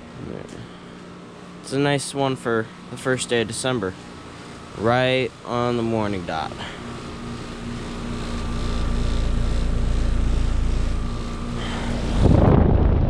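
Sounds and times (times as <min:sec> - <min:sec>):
compressor hum: 0:00.0 - 0:13.0
fan rushing: 0:00.0 - 0:13.0.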